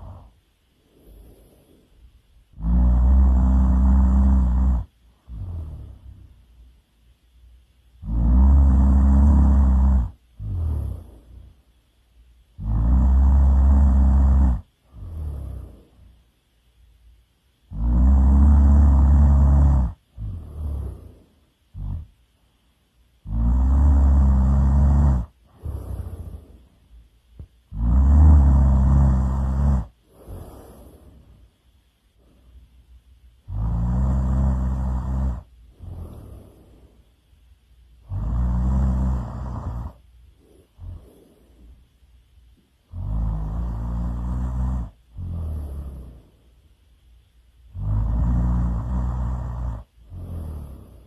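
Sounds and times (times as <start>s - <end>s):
soft breath out: 0.0s - 3.8s, 25.4s - 27.6s, 29.6s - 32.8s, 34.5s - 37.3s, 38.5s - 46.7s, 48.8s - 51.0s
person snoring: 0.0s - 6.4s, 8.0s - 11.6s, 12.6s - 16.1s, 17.7s - 22.1s, 23.2s - 26.8s, 27.4s - 31.5s, 33.4s - 37.1s, 38.0s - 41.8s, 42.8s - 46.5s, 47.7s - 51.0s.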